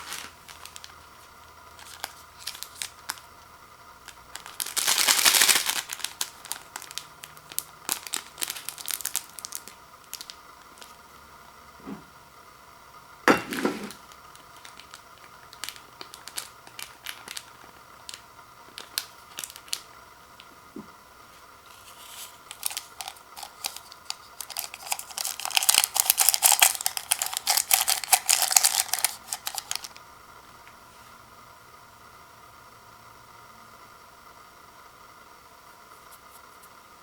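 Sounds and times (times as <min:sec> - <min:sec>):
plastic packaging crinkling: 0:00.0 - 0:03.3, 0:04.0 - 0:11.0, 0:13.5 - 0:20.6, 0:21.4 - 0:30.0.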